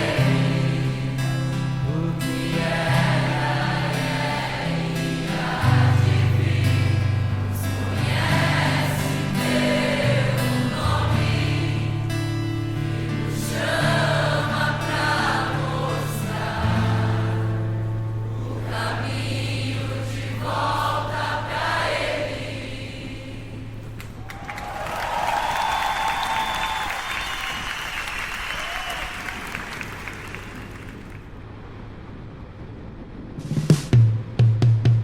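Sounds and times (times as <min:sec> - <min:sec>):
choir singing: 0:00.0 - 0:23.9
held bass notes: 0:00.0 - 0:24.0.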